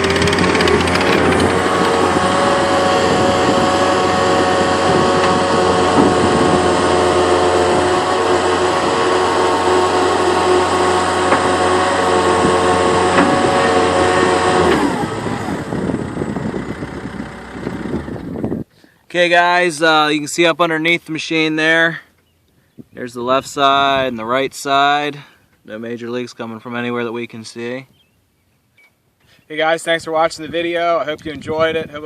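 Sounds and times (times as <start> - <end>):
diesel engine running with whine: 0.0 - 18.6.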